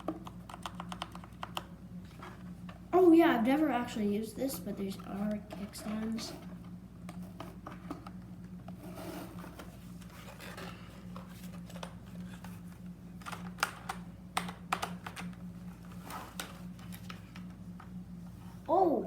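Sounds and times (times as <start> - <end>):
mechanical keyboard keys clicking: 0.1 - 1.7.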